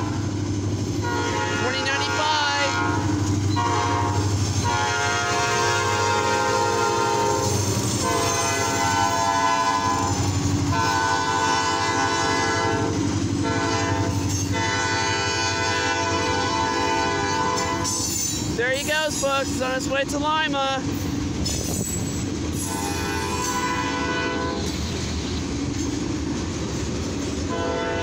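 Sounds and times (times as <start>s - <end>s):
freight train rumbling: 0.0s - 28.0s
locomotive air horn blasts: 1.0s - 18.0s, 22.6s - 25.0s, 27.5s - 28.0s.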